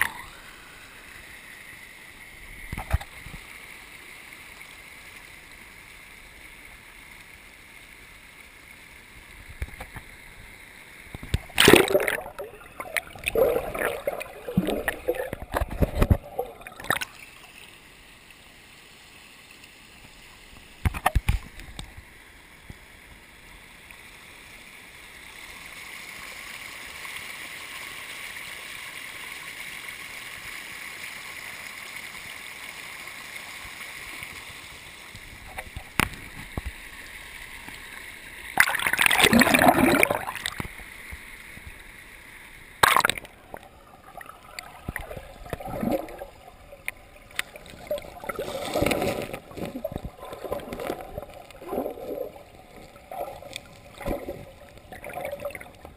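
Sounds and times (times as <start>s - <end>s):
running water rushing: 0.0s - 18.4s, 33.4s - 55.9s
water splashing: 11.1s - 17.6s, 38.5s - 40.8s, 42.8s - 55.9s.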